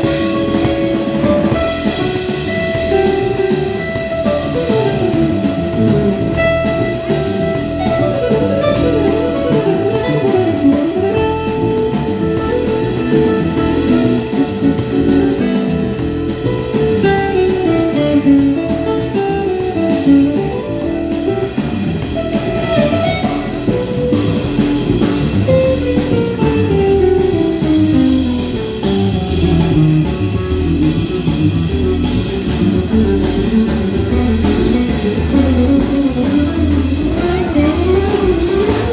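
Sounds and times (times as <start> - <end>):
drums: 0.0 - 38.9
fast guitar melody: 0.0 - 38.9.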